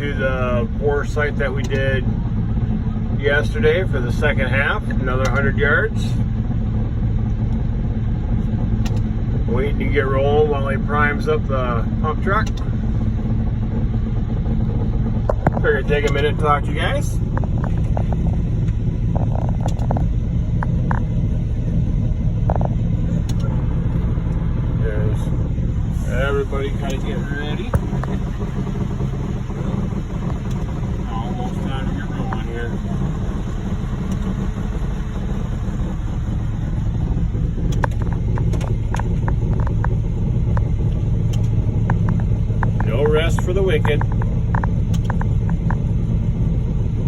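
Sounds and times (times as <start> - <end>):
truck engine rumbling: 0.0 - 47.0
sharp clicks and knocks: 1.6 - 1.9, 8.4 - 9.1, 12.4 - 12.8, 14.6 - 16.5, 17.2 - 21.7, 22.4 - 24.5, 26.6 - 36.1, 36.7 - 46.0
faint clicks and knocks: 17.3 - 21.2, 37.6 - 45.9.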